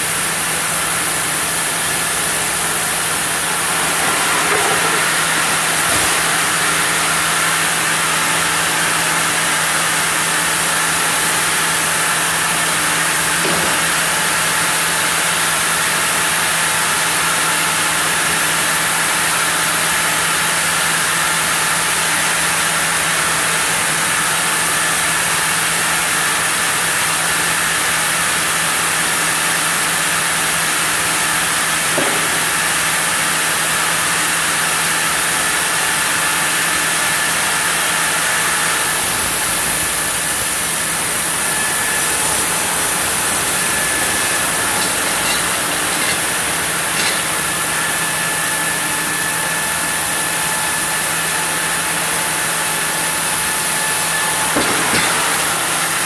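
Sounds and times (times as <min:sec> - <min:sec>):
sawmill saw cutting log: 0:00.1 - 0:20.0, 0:36.2 - 0:56.0.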